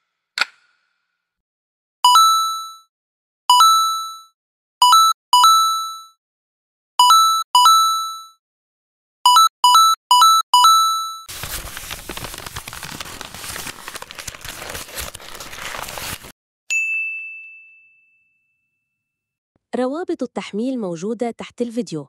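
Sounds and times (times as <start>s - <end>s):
high ding: 16.7s - 19.1s.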